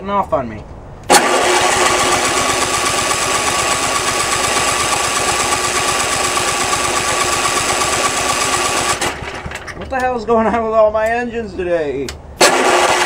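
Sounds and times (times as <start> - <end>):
snowblower engine running: 1.1 - 10.0, 12.4 - 13.0.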